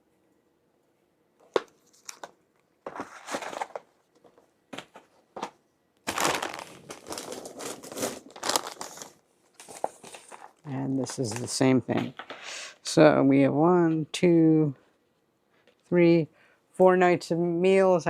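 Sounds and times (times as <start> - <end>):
packaging crinkling and rustling: 1.4 - 12.4.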